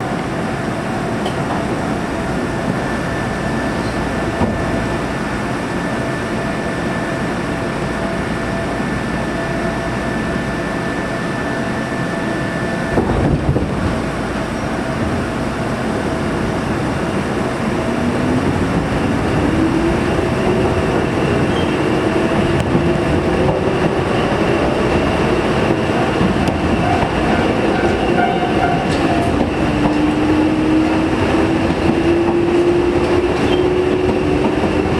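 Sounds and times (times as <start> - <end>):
train clatter: 0.0 - 4.9, 20.9 - 34.9
electric train whine: 0.0 - 34.9
train wheels rumbling on rail: 0.0 - 34.9.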